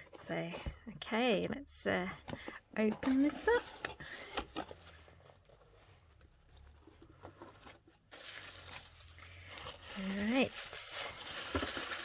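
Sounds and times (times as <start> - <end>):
packaging tearing and crinkling: 8.1 - 12.0.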